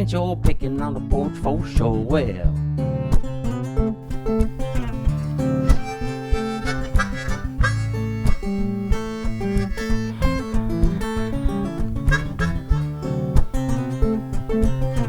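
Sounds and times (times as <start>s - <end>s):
strummed acoustic guitar: 3.0s - 15.0s
harmonica: 4.1s - 15.0s.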